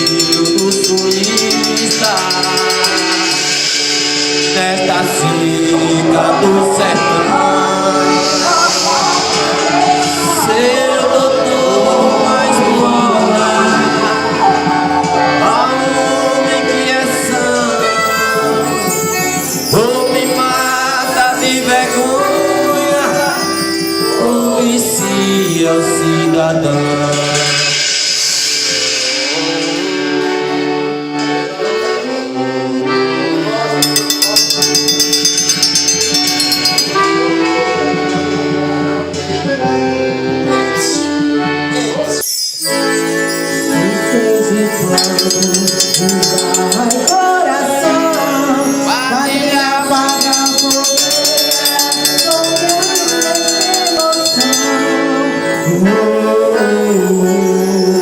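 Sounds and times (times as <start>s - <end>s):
hand percussion beat: 0.0s - 15.5s, 33.8s - 38.0s, 43.7s - 55.8s
accordion folk music: 0.0s - 58.0s.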